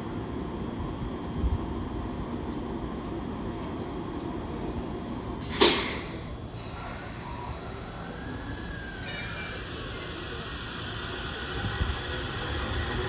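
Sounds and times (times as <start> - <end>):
train air hiss: 5.4 - 13.0
electric train motor whine: 6.4 - 13.0.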